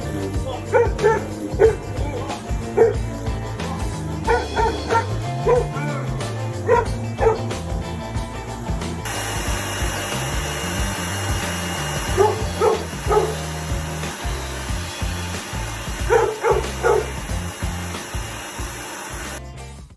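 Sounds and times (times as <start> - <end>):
background music with beat: 0.0 - 18.6
dog barking: 0.7 - 2.0, 2.7 - 3.1, 4.3 - 6.0, 6.6 - 7.5, 12.0 - 13.4, 16.0 - 17.2
machine drone: 9.0 - 19.4.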